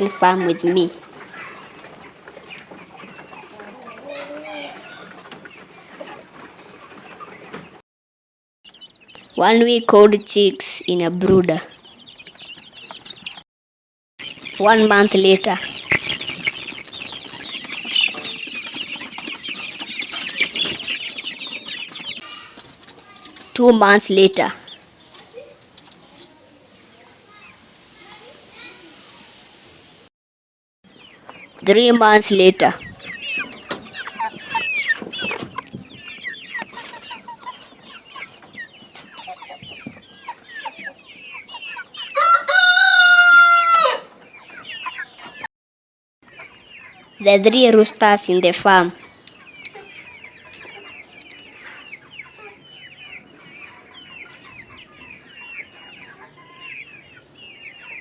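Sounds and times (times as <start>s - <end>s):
chicks peeping: 0.0s - 7.8s, 8.7s - 13.4s, 14.2s - 30.1s, 30.9s - 45.5s, 46.2s - 58.0s
rooster crowing: 42.1s - 44.1s.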